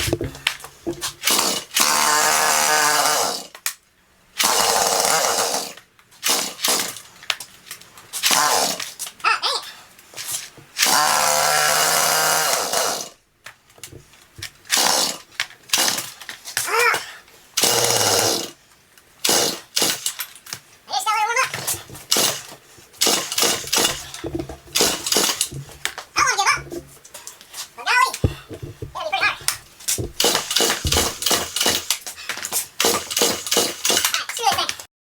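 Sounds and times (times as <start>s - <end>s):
chainsaw recoil starter pulls: 22.0s - 26.9s, 28.3s - 32.0s.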